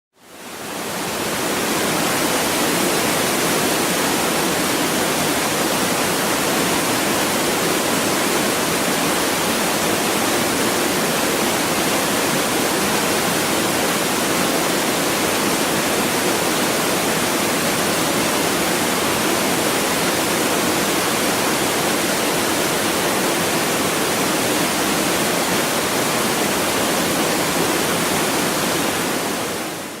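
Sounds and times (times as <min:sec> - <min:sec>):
waterfall rushing and splashing: 0:00.2 - 0:30.0.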